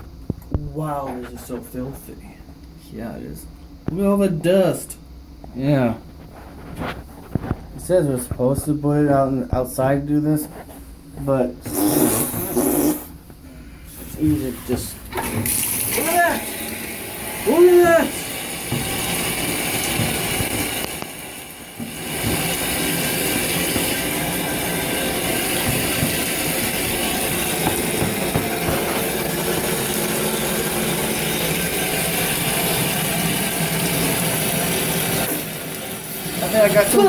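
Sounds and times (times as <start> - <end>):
shower water spraying: 11.7 - 13.2, 14.0 - 37.0.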